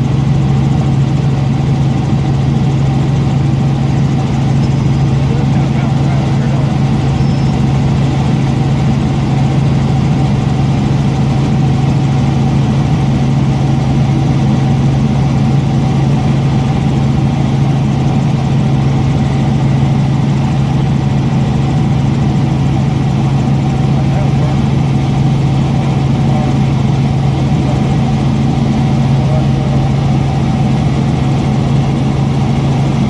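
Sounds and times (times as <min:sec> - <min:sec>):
helicopter engine and rotors humming: 0:00.0 - 0:33.0.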